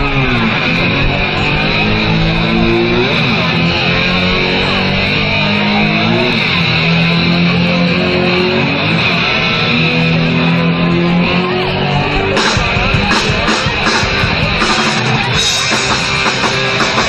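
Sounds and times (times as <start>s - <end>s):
sliding electric guitar notes: 0.0s - 17.0s
live rock band playing: 11.1s - 17.0s.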